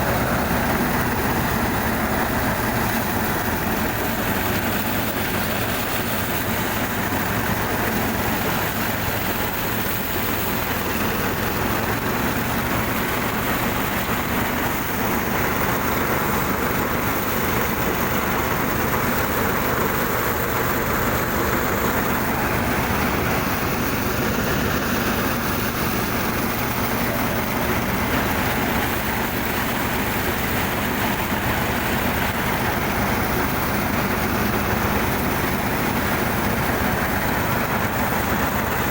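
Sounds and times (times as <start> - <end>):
stationary engine running: 0.0 - 38.9.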